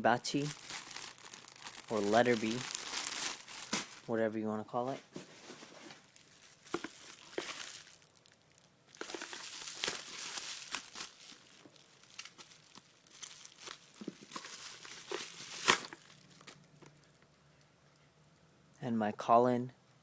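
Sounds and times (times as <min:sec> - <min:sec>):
packaging crinkling and tearing: 0:00.3 - 0:04.1, 0:05.4 - 0:17.1.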